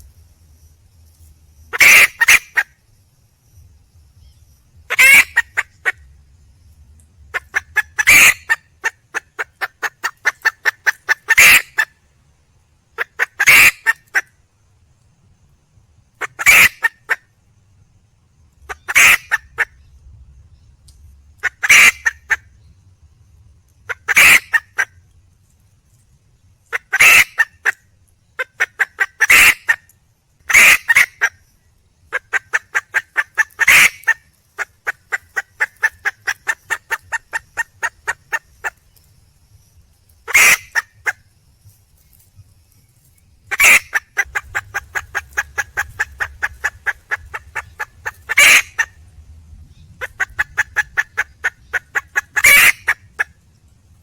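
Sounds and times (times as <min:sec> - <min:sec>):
hen clucking: 0:01.7 - 0:02.6, 0:04.9 - 0:06.0, 0:07.3 - 0:11.9, 0:13.0 - 0:14.2, 0:16.2 - 0:17.2, 0:18.7 - 0:19.8, 0:21.4 - 0:22.4, 0:23.9 - 0:24.9, 0:26.7 - 0:27.8, 0:28.4 - 0:29.8, 0:30.5 - 0:31.3, 0:32.1 - 0:38.8, 0:40.3 - 0:41.2, 0:43.5 - 0:49.1, 0:50.0 - 0:53.3.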